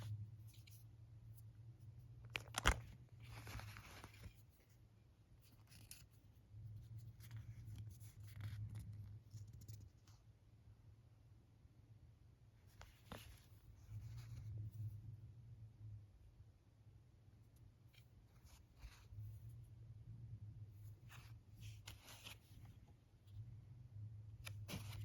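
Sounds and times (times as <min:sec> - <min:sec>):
scraping and rustling: 0:02.4 - 0:04.8.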